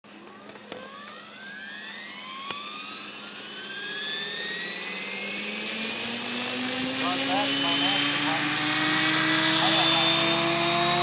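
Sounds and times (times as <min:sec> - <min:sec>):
rc helicopter whine rising: 0:00.1 - 0:11.0
low hum: 0:05.9 - 0:11.0.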